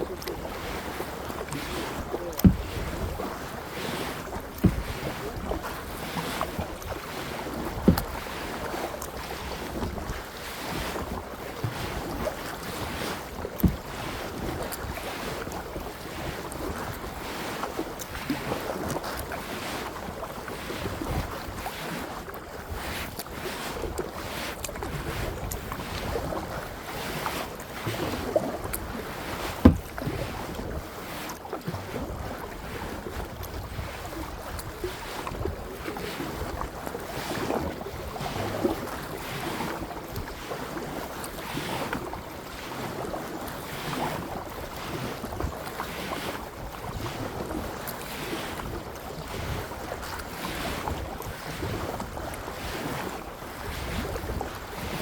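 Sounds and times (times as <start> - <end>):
paddle strokes splashing: 0.0 - 55.0
water lapping at hull: 0.0 - 55.0
sharp knocks: 2.4 - 2.7, 29.6 - 29.8.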